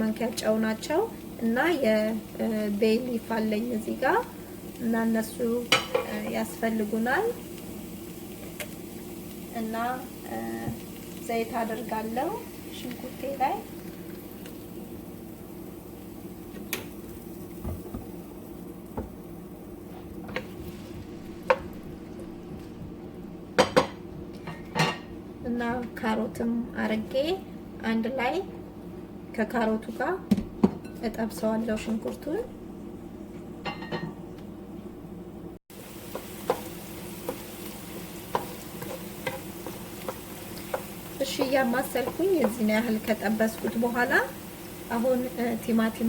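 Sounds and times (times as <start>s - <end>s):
vegetables sizzling in oil: 0.0s - 25.4s, 35.7s - 46.0s
steady low hum: 0.0s - 35.6s.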